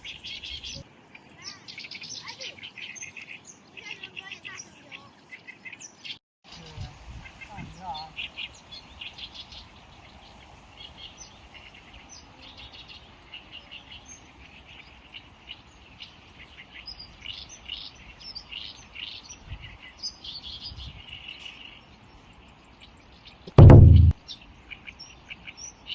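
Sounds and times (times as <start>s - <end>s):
birds chirping: 0.0s - 25.9s
faint outdoor hiss: 0.0s - 25.9s
dull low thumps: 23.5s - 24.2s.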